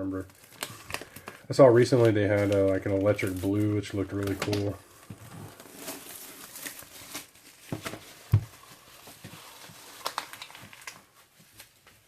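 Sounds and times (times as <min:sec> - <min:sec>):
rustling of packaging: 0:00.0 - 0:12.0.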